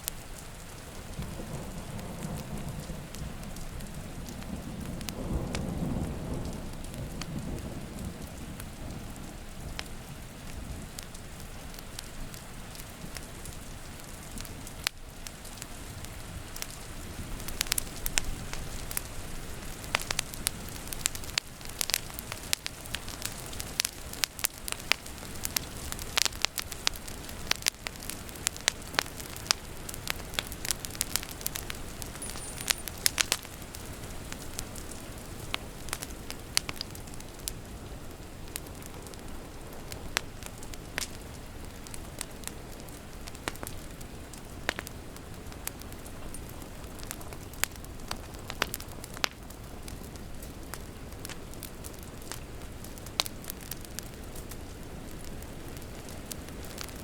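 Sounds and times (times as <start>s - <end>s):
steady rain: 0.0s - 57.0s
wood fire crackling and popping: 0.0s - 57.0s
low roll of thunder: 0.9s - 11.0s.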